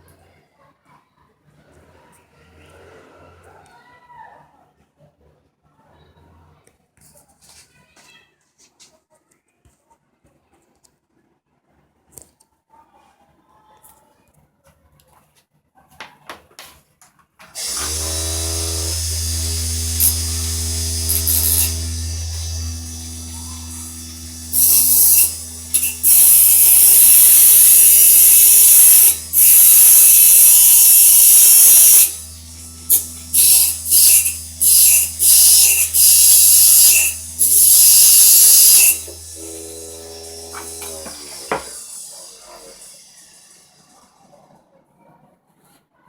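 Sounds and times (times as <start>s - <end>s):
electric motor humming: 17.6s - 43.1s.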